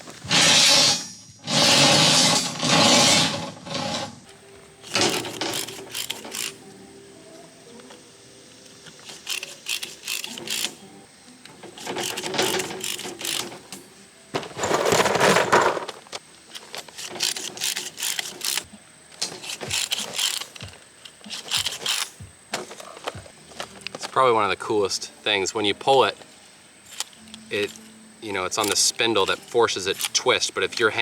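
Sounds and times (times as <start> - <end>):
rebar tie twister clicking and rattling: 4.8 - 6.7, 8.8 - 13.9, 14.6 - 23.2, 26.8 - 31.0.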